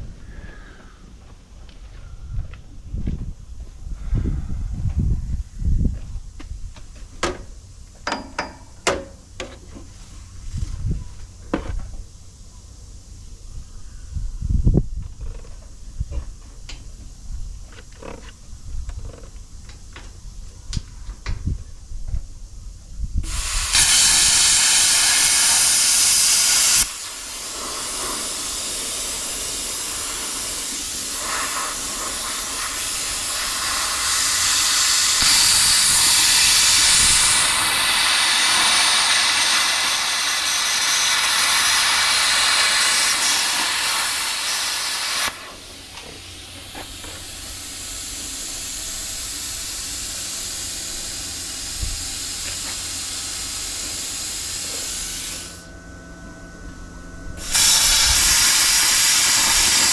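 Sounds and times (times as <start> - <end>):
wind rushing over microphone: 1.9 - 6.8, 13.5 - 16.2, 20.8 - 26.8, 29.6 - 44.0.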